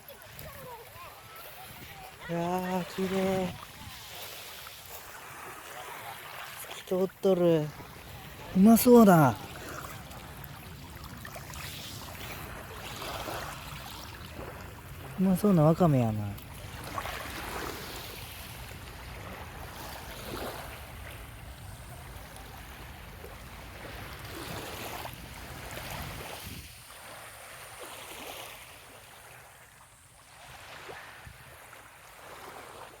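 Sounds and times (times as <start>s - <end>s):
small waves washing ashore: 0.0s - 33.0s
wind rumbling on microphone: 3.2s - 4.1s, 25.7s - 26.8s.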